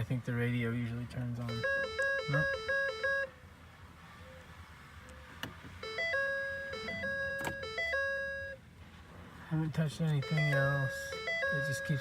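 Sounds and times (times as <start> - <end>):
two-note electronic warning chimes: 1.4 - 3.3, 5.8 - 8.6, 10.2 - 12.0.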